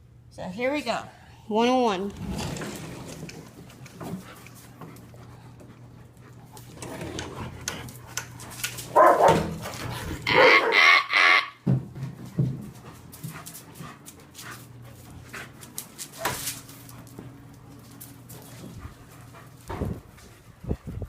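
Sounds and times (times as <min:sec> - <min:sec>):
dogs panting: 0:03.1 - 0:10.4, 0:12.2 - 0:21.0.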